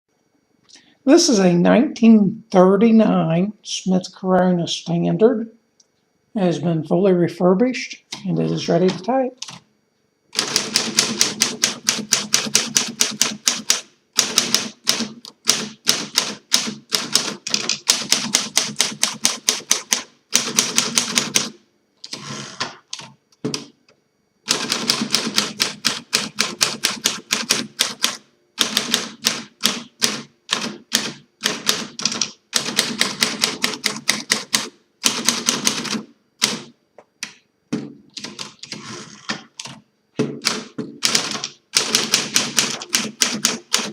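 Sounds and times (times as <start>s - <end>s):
manual typewriter typing: 10.4s - 23.6s, 24.5s - 36.7s, 38.2s - 39.8s, 40.4s - 43.9s.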